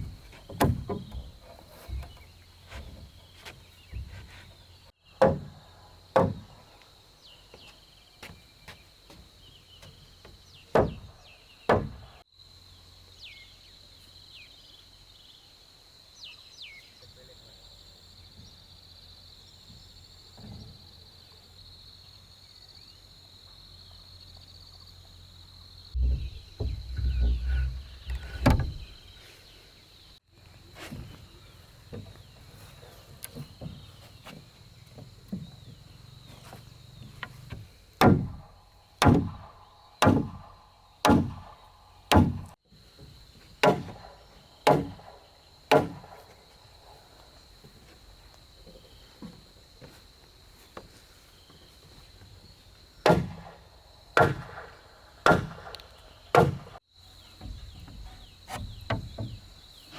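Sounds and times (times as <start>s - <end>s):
hammer knocking on timber: 26.0s - 28.9s
heavy thuds and clatter: 26.0s - 29.0s.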